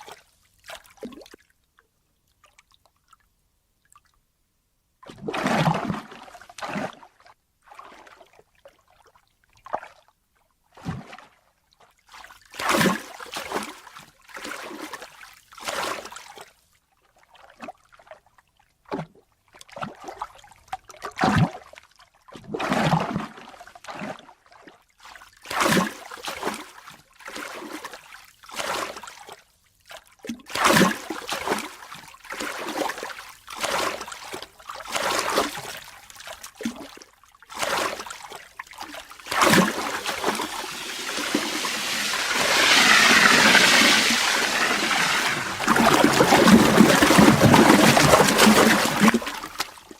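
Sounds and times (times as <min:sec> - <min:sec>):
ocean water splashing: 0:39.0 - 0:49.9.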